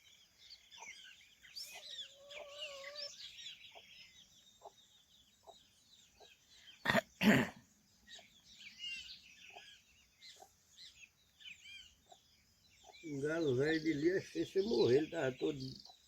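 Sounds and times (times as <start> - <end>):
chickens clucking softly: 1.6 - 3.9
chicks peeping: 1.6 - 6.4
chicken coughing: 6.8 - 7.6.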